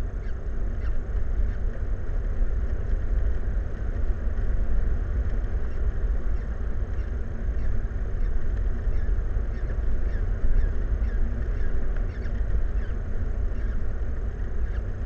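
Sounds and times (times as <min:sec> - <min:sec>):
low rumbling noise: 0:00.0 - 0:15.0
faint high-pitched calls: 0:05.7 - 0:13.8, 0:14.6 - 0:14.9.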